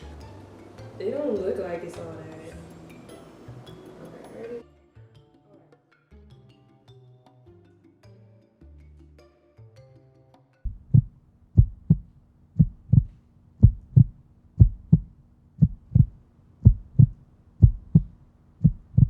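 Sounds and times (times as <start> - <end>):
heartbeat thumps: 10.7 - 19.0
low hum: 10.7 - 19.0.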